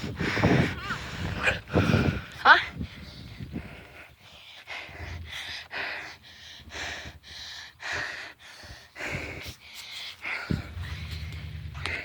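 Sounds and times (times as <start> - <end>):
person breathing heavily: 0.0 - 12.0.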